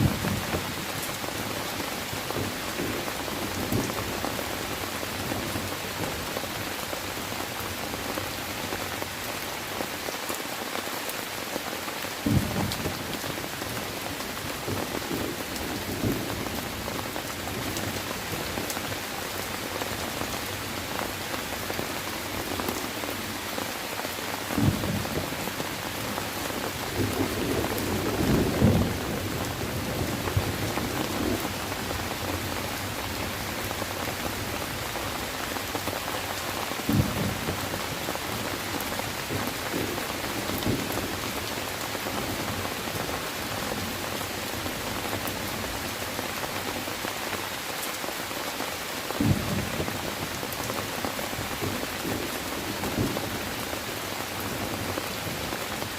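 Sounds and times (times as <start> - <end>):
steady rain: 0.0 - 55.9
thunder: 12.2 - 13.0, 24.5 - 25.6, 27.0 - 31.6, 36.8 - 37.6, 49.2 - 49.9.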